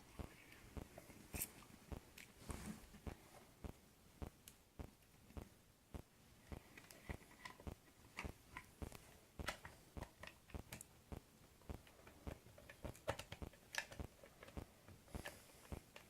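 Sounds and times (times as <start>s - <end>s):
small plastic parts clicking: 6.7s - 10.9s, 11.7s - 16.0s.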